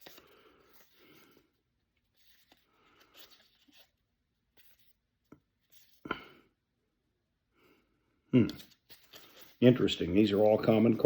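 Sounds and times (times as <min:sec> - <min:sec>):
card pack crinkling: 0:00.0 - 0:01.2.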